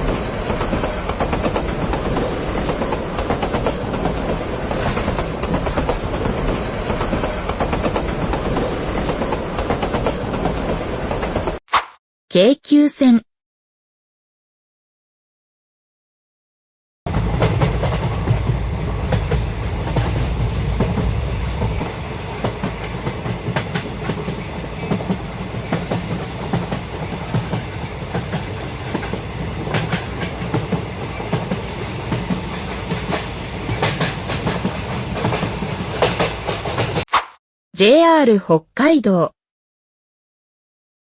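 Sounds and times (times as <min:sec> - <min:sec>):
electric train running on rails: 0:00.0 - 0:11.5, 0:17.1 - 0:37.0
wheels clicking over rail joints: 0:22.4 - 0:37.0.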